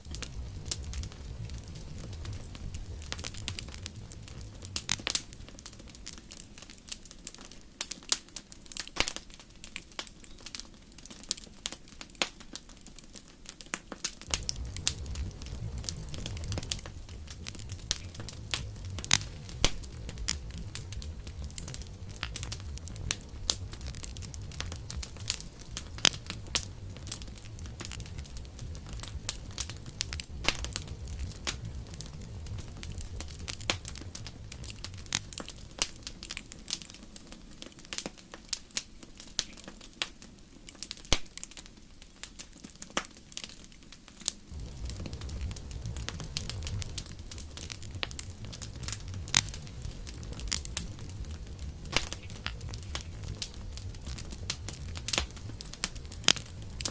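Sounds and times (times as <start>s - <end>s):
low rumble: 0.0s - 5.7s, 14.3s - 36.2s, 44.5s - 56.9s
campfire crackling and popping: 0.0s - 56.9s.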